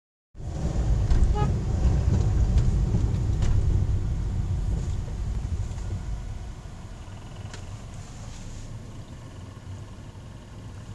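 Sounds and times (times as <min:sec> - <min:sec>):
strong wind buffeting microphone: 0:00.4 - 0:06.8.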